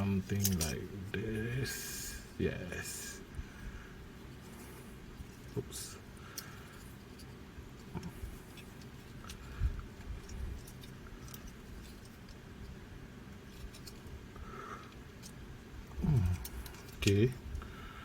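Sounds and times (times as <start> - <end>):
toy parts clicking and tapping: 0.4 - 0.8.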